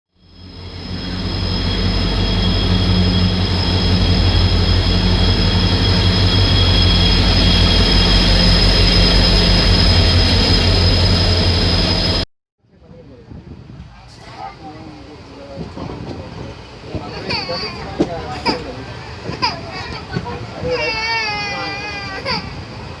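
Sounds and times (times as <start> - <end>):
high-pitched whines: 0.2 - 12.2
train rumbling: 0.2 - 23.0.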